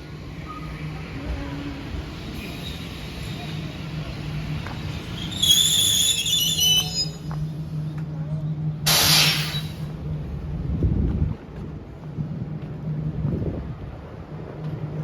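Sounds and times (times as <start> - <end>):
train low hum: 0.0 - 15.0
metallic squeal of brakes: 0.4 - 1.0, 2.4 - 3.6, 5.0 - 7.5, 9.0 - 9.9
air brake hiss: 8.9 - 9.9.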